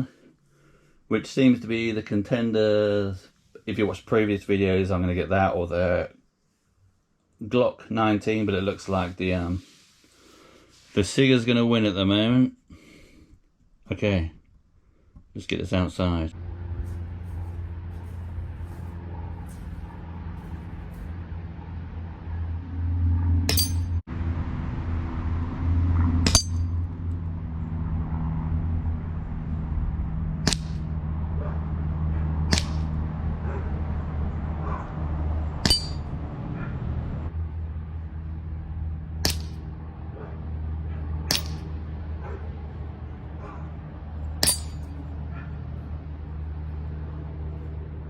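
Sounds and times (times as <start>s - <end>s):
low hum: 16.3s - 48.0s
metallic target ping: 23.5s - 24.0s, 26.2s - 26.9s, 35.6s - 36.2s, 41.3s - 41.8s, 44.4s - 45.0s.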